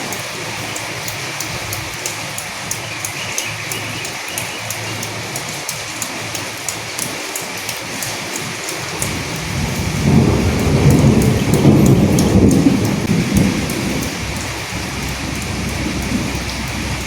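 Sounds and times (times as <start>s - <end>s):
rain drops ticking: 0.0s - 17.0s
thunder rumble: 8.9s - 17.0s.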